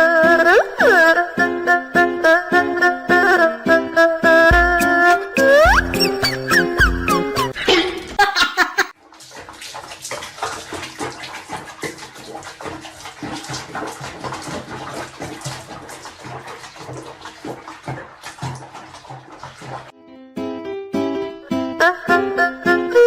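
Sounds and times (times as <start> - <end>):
water running and splashing: 6.0 - 20.0.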